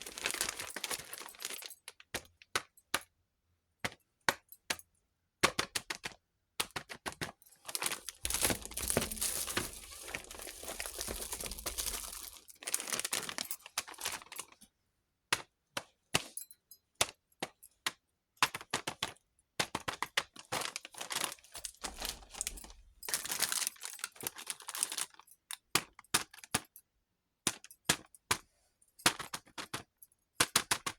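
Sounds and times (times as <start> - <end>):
plastic packaging crinkling: 0.0 - 1.8, 7.6 - 14.6, 20.5 - 25.2.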